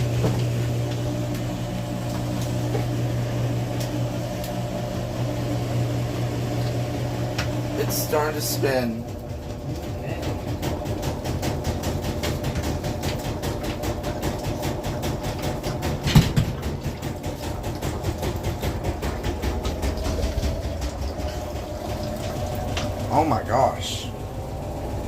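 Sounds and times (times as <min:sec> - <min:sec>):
washing machine hum: 0:00.0 - 0:25.0
fast rhythmic clicks of drum: 0:09.0 - 0:21.7.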